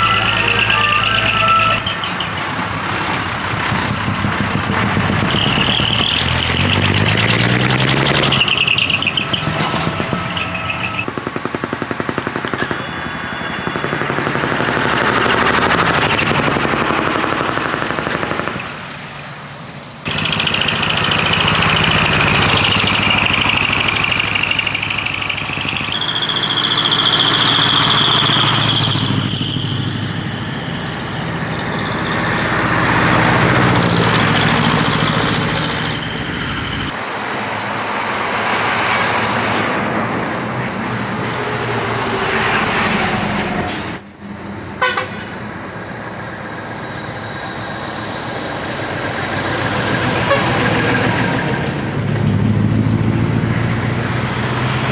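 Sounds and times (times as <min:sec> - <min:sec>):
steady high tone: 0:00.0 - 0:03.7, 0:12.5 - 0:16.8
diesel truck engines passing: 0:00.0 - 0:54.9.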